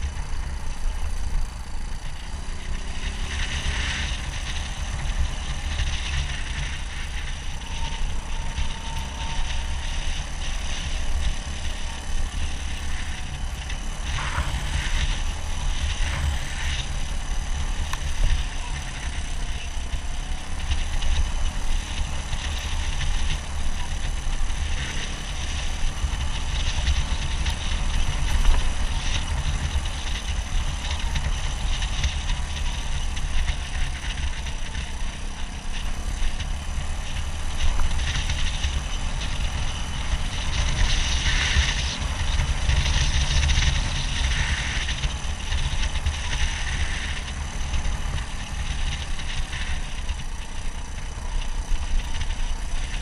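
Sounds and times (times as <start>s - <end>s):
motorcycle engine running: 0.0s - 53.0s
wind rumble on microphone: 0.0s - 53.0s.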